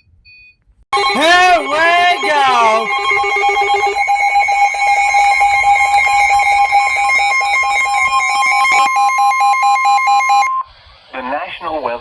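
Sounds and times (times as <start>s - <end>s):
rapid alert beeps: 1.0s - 10.4s
steady alarm tone: 1.0s - 10.5s.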